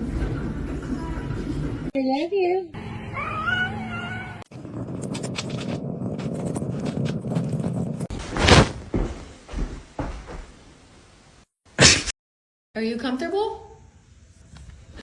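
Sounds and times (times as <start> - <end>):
cat meowing: 3.2 - 4.4.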